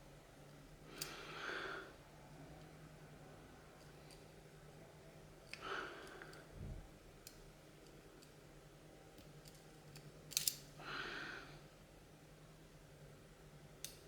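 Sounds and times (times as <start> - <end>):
person breathing: 10.8 - 11.6.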